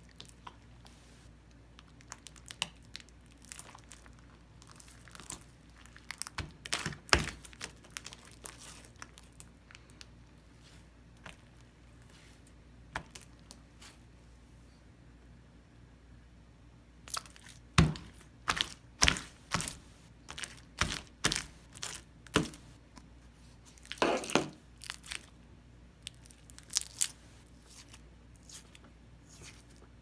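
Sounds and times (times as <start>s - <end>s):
slime clicking and crackling: 1.8s - 10.1s, 17.1s - 22.7s, 24.8s - 25.4s, 26.0s - 28.8s.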